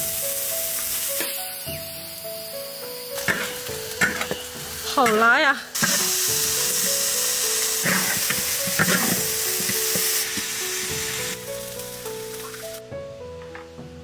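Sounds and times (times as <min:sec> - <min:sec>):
food sizzling in a pan: 0:00.0 - 0:12.9
soft background music: 0:00.0 - 0:14.0
spatula scraping a pan: 0:05.8 - 0:10.6.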